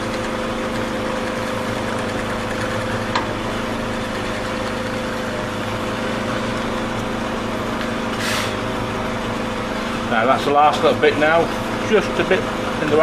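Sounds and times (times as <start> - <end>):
electric motor running steadily: 0.0 - 13.0.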